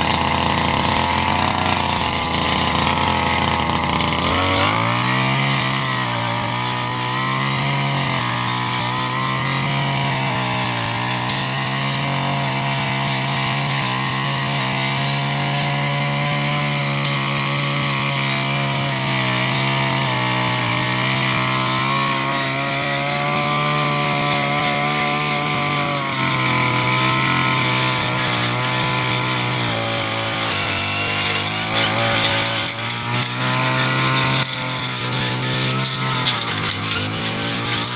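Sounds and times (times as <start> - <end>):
brush cutter engine cutting grass: 0.0 - 37.9.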